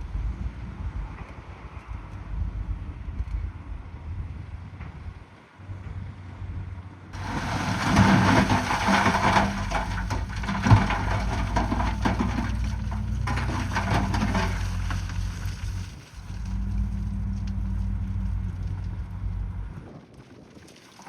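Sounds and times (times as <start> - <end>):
bulldozer diesel engine: 0.0 - 19.9
rock grinding and crunching: 7.2 - 21.0.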